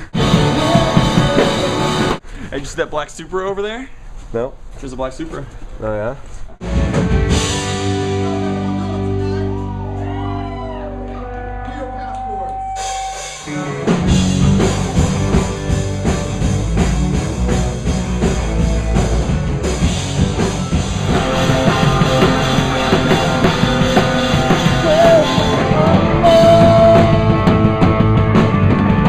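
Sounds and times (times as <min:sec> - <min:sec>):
drum kit: 0:00.0 - 0:02.2, 0:06.6 - 0:10.4, 0:12.6 - 0:29.0
loud fast rock band: 0:00.0 - 0:02.2, 0:06.6 - 0:11.6, 0:12.6 - 0:29.0
held high note: 0:21.0 - 0:27.5.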